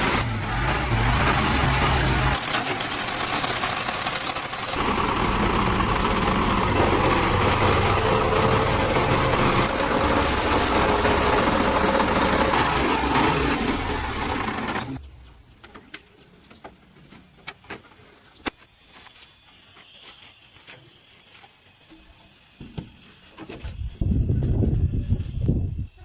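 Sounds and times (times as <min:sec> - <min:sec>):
heavy engine running: 0:00.0 - 0:15.0.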